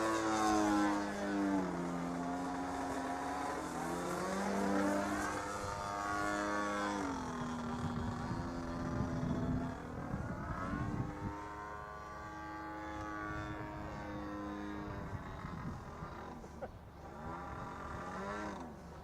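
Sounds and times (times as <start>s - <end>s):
model plane engine: 0.0s - 19.0s.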